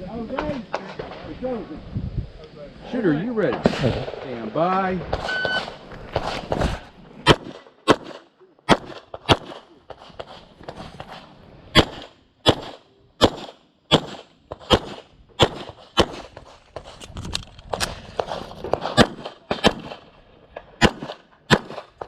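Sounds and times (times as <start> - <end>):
handgun shots with echo: 11.8 - 16.3, 18.8 - 20.0, 20.8 - 22.0.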